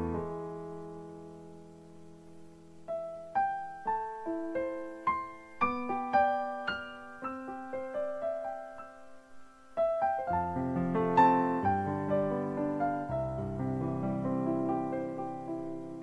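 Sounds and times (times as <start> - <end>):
slow piano music: 0.0 - 16.0.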